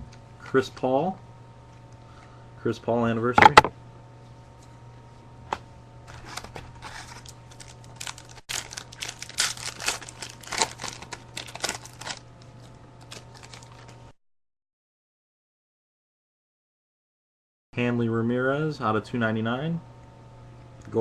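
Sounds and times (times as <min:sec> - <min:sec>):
foil wrapper crinkling: 0:06.1 - 0:14.1.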